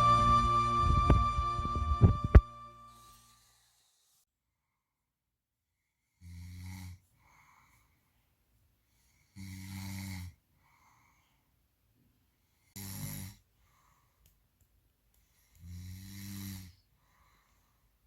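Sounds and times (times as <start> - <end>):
man snoring: 6.2 - 7.0, 9.4 - 10.4, 12.8 - 13.4, 15.6 - 16.8.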